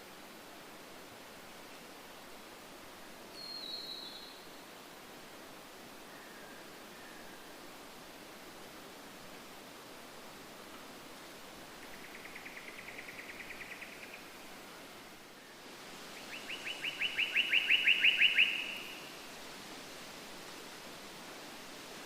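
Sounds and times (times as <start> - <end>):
steady hiss: 0.0 - 22.0
bird singing trills: 16.3 - 19.0.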